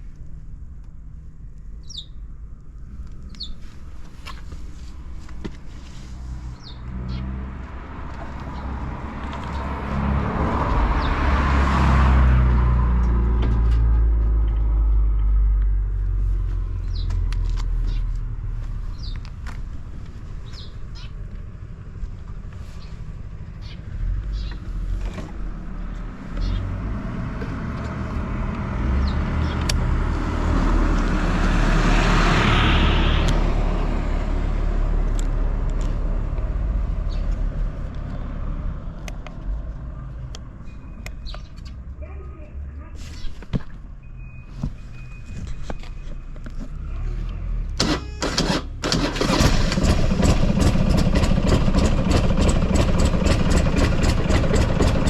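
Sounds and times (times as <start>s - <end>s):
small birds chirping: 1.8s - 2.3s, 3.1s - 4.6s, 6.3s - 7.4s, 16.7s - 19.4s, 20.2s - 21.3s, 22.6s - 25.0s, 25.7s - 26.8s, 29.0s - 29.8s, 37.0s - 38.3s, 40.6s - 43.5s
motorcycle engine running: 49.2s - 55.0s.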